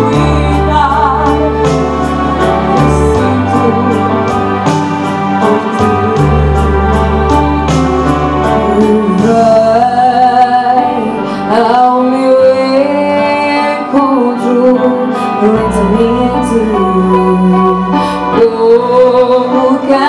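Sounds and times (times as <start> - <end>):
instrumental accompaniment: 0.0 - 20.0
woman singing: 0.0 - 20.0.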